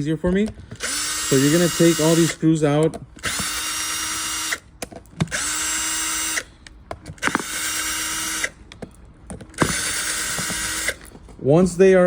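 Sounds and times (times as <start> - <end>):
power drill whine: 0.7 - 2.4, 3.2 - 4.7, 5.3 - 6.5, 7.2 - 8.6, 9.6 - 11.1.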